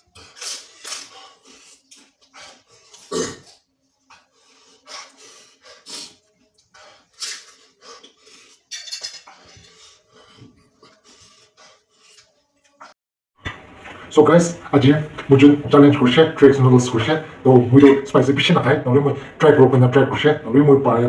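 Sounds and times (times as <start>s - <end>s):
sharp breaths and coughs: 0.0s - 6.2s
person slurping noodles: 0.1s - 3.6s
utensils clinking on dishes: 8.6s - 9.8s.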